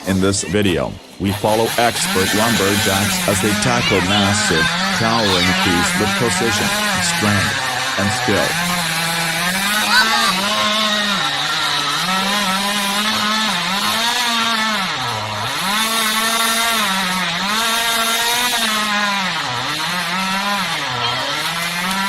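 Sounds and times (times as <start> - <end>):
chainsaw cutting wood: 0.0 - 22.0.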